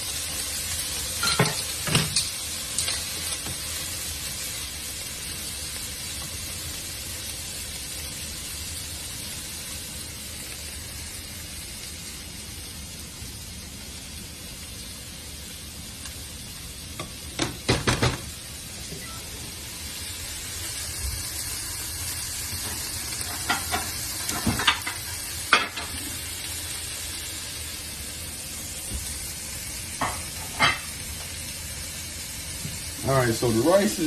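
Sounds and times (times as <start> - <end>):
chicken sizzling in a pan: 0.0 - 34.0.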